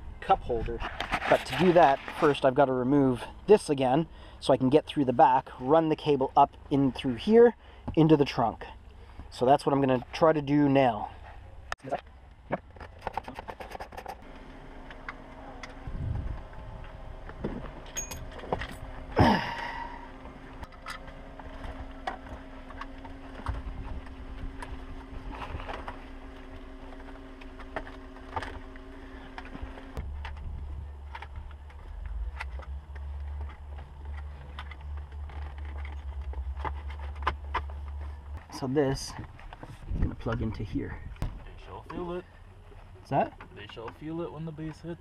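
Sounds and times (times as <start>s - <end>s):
low rumble: 14.2s - 43.0s
steady low hum: 14.2s - 45.0s.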